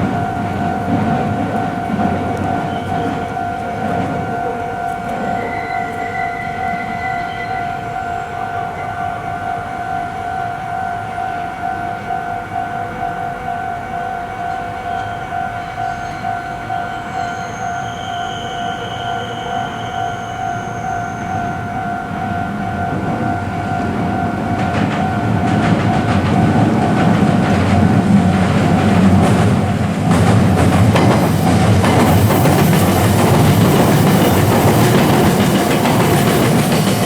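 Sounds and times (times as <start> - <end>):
passing train rumble: 0.0 - 37.0.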